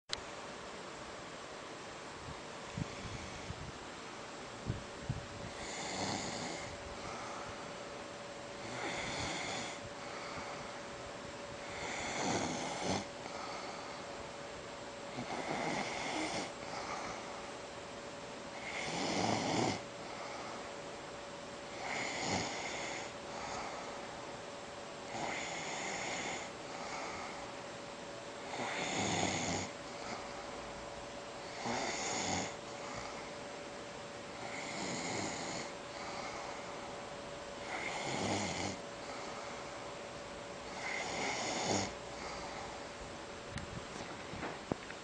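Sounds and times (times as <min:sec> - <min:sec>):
loud snoring: 0:05.5 - 0:07.2, 0:08.6 - 0:10.3, 0:11.6 - 0:13.7, 0:15.1 - 0:17.2, 0:18.6 - 0:19.8, 0:21.7 - 0:23.8, 0:25.1 - 0:27.3, 0:28.4 - 0:30.3, 0:31.4 - 0:33.3, 0:34.4 - 0:36.6, 0:37.6 - 0:39.4, 0:40.6 - 0:42.8
breathing hiss: 0:05.5 - 0:07.9, 0:08.6 - 0:11.0, 0:11.6 - 0:14.3.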